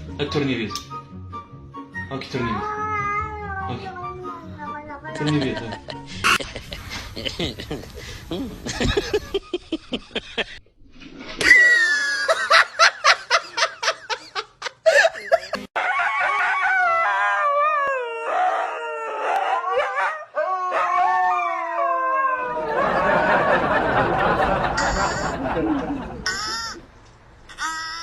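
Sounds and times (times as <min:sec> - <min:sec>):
dog howling: 0:15.8 - 0:22.9.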